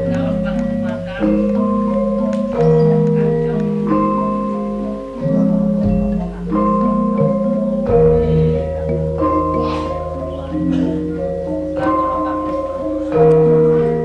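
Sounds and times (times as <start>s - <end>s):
gamelan metal mallet instruments: 0.0s - 14.0s
deep low gong tone: 7.2s - 11.0s.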